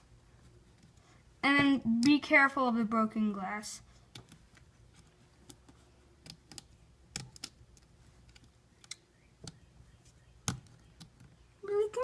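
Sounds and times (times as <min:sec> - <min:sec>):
small clicks and taps of tools: 0:04.1 - 0:09.6.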